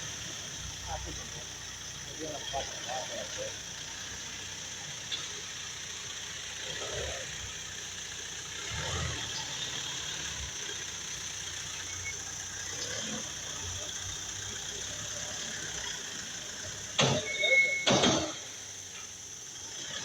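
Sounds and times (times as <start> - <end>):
short squeak: 17.0 - 18.4
loud clunks: 17.0 - 18.5.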